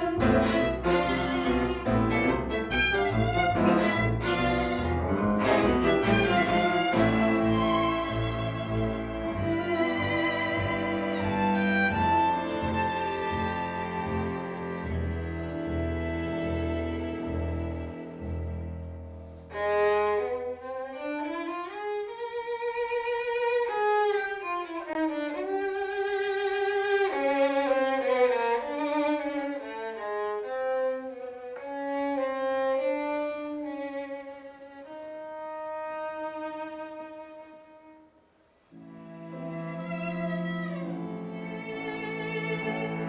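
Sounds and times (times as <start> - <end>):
solo violin melody with vibrato: 0.0 - 18.5, 19.5 - 38.1, 38.8 - 43.0
low sustained notes: 1.2 - 19.2.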